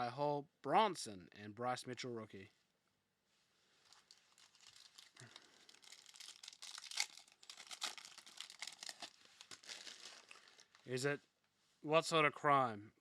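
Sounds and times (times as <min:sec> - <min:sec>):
wrapper crinkling and tearing: 0:03.8 - 0:10.9.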